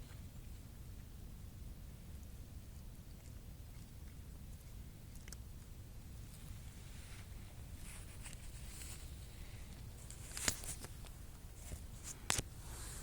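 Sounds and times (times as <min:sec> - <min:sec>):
low steady rumble: 0:00.0 - 0:13.0
faint rustles: 0:06.1 - 0:13.0.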